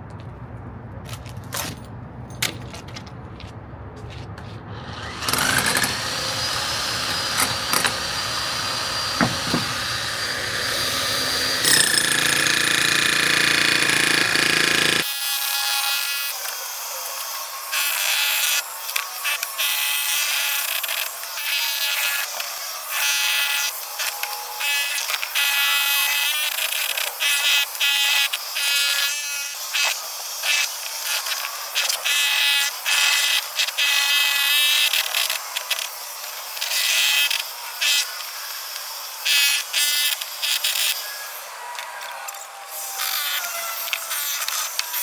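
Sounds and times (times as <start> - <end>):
jackhammer chipping concrete: 4.8 - 15.8.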